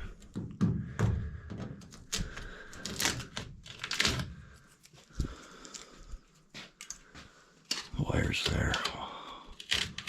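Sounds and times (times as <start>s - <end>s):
hands clicking and tapping parts: 6.7s - 10.0s.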